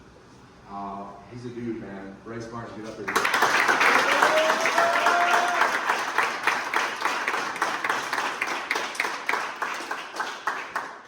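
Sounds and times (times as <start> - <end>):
group applauding: 3.0 - 11.0.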